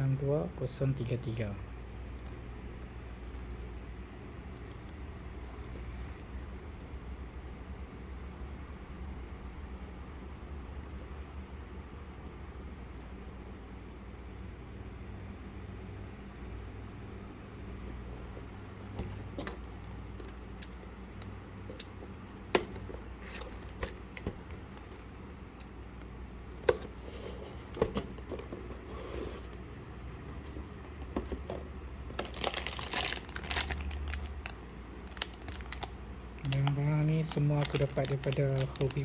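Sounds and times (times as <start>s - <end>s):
plastic wrap crinkling and tearing: 32.2s - 39.0s.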